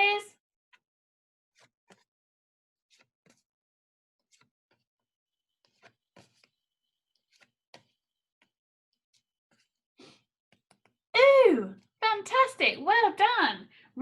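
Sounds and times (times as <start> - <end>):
cardboard flashcards flipping: 1.6 - 2.1, 2.9 - 3.5, 5.6 - 6.6, 7.2 - 8.0.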